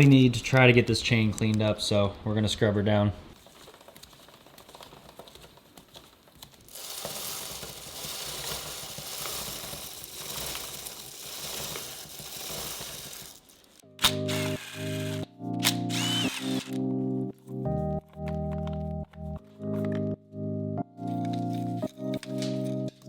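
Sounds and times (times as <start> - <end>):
power tool whirring: 6.7 - 16.8.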